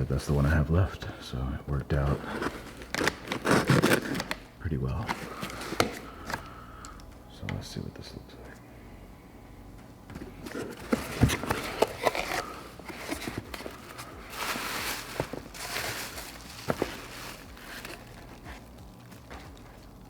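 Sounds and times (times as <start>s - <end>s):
packaging rustling: 1.9s - 7.0s, 10.1s - 20.0s.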